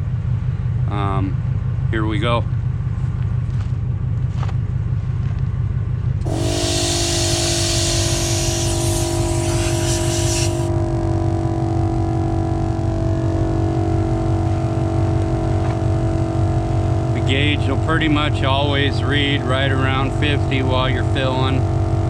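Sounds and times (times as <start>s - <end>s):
low steady rumble: 0.0s - 22.0s
air compressor humming: 6.2s - 22.0s
loud hiss of air: 6.3s - 10.7s.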